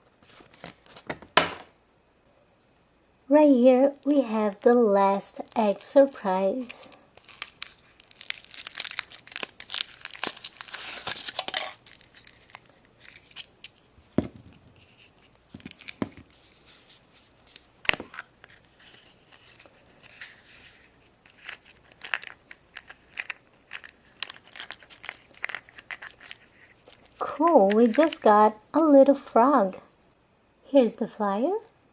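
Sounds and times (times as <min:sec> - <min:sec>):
foil wrapper tearing and crinkling: 0:03.9 - 0:28.3.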